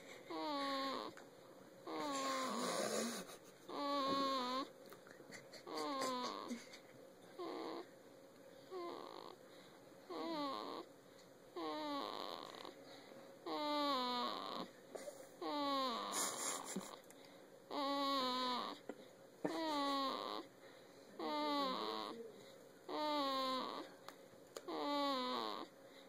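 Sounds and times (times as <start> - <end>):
baby snoring: 0.3 - 1.2, 1.9 - 4.7, 5.4 - 6.7, 7.4 - 7.9, 8.7 - 9.4, 10.1 - 10.9, 11.6 - 12.8, 13.4 - 14.7, 15.4 - 17.0, 17.7 - 18.9, 19.5 - 20.5, 21.2 - 24.0, 24.6 - 25.7.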